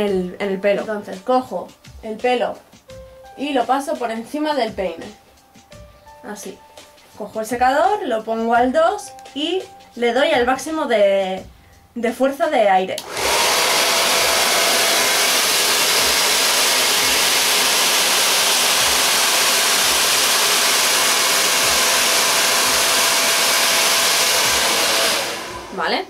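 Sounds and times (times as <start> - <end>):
hair dryer air rush: 13.0 - 26.0.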